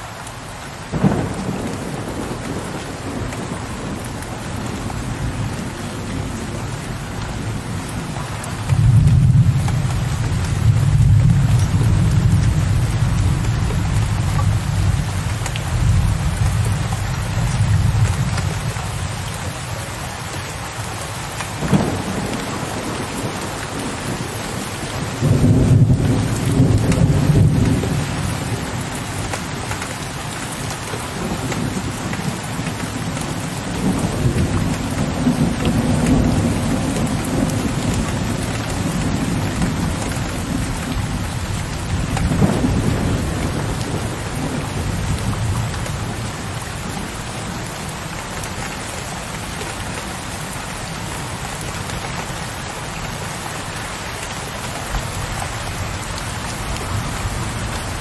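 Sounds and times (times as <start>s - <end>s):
rain on a window ledge: 0.0s - 58.0s
distant thunder rolling: 0.9s - 6.6s, 42.0s - 45.4s.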